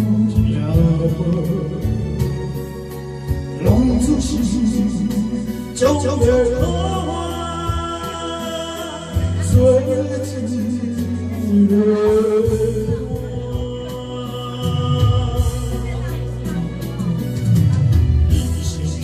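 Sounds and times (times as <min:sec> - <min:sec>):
person singing with vibrato: 0:00.0 - 0:02.7, 0:03.6 - 0:17.6
sustained bass notes: 0:00.0 - 0:19.0
light drum beat: 0:10.9 - 0:19.0.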